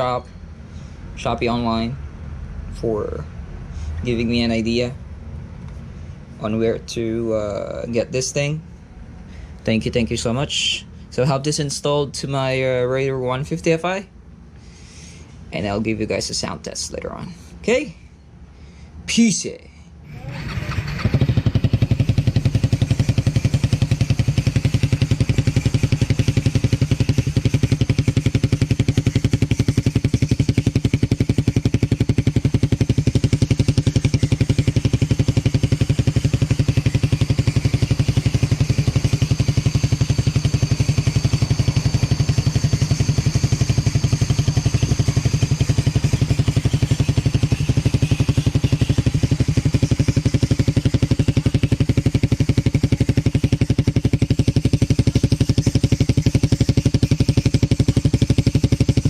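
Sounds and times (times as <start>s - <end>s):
motorcycle engine idling: 0.0s - 1.8s, 20.1s - 59.0s.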